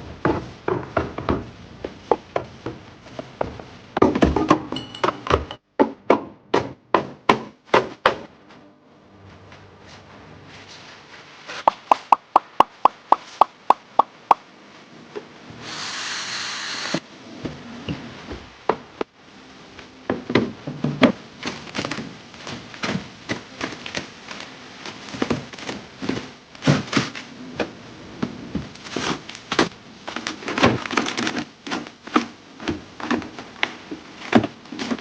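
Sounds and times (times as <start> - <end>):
containers knocking and clicking: 11.7 - 14.4.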